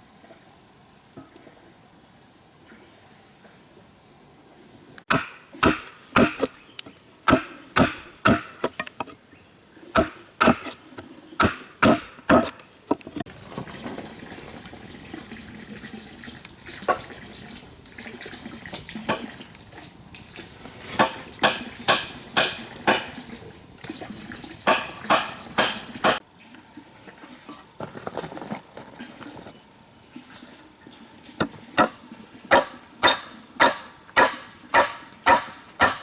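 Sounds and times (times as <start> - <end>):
sharp knocks: 5.1 - 6.6, 7.3 - 9.2, 10.0 - 10.8, 11.4 - 13.2, 24.6 - 26.2, 31.4 - 36.0
water sloshing: 5.1 - 26.2.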